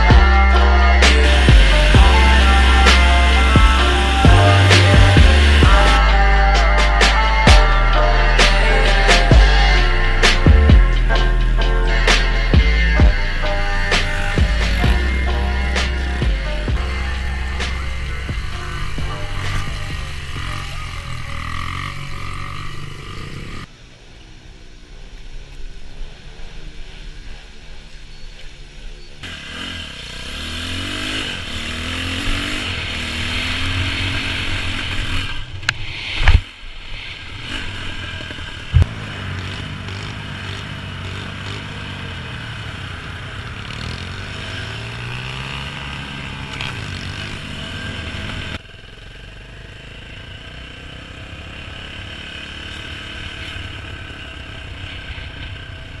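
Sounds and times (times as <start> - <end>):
pit bike engines revving: 0.0 - 23.8, 26.0 - 56.0.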